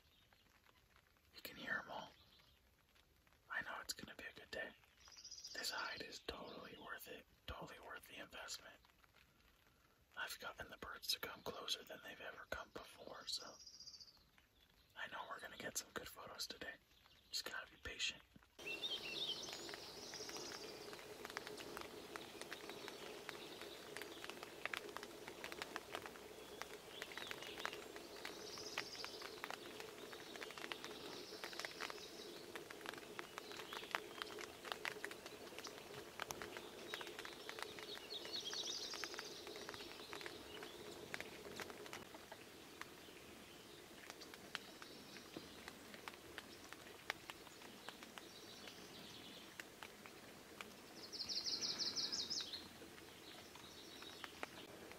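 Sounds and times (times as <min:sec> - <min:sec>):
raindrops tapping: 0:00.0 - 0:06.7, 0:18.2 - 0:54.9
songbirds singing and calling: 0:01.4 - 0:02.7, 0:03.5 - 0:09.6, 0:10.2 - 0:54.9.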